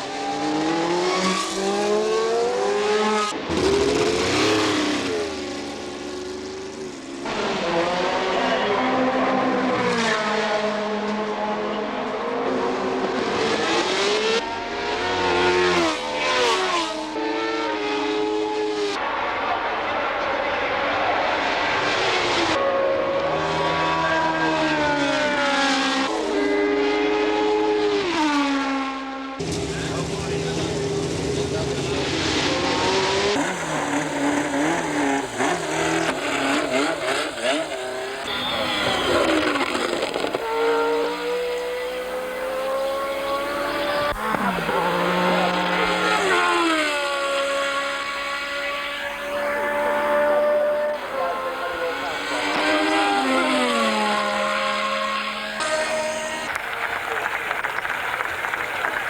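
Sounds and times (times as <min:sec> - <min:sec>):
race car engine at high revs: 0:00.0 - 0:59.0
different engine sound: 0:29.4 - 0:59.0.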